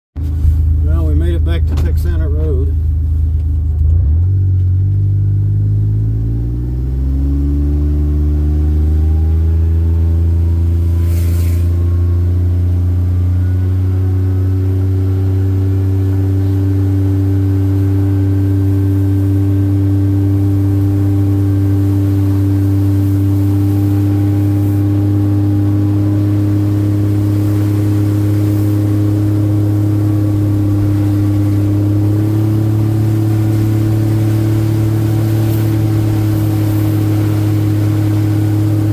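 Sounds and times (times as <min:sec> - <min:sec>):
vehicle engine accelerating: 0:00.2 - 0:38.9
brief hiss: 0:11.0 - 0:11.9.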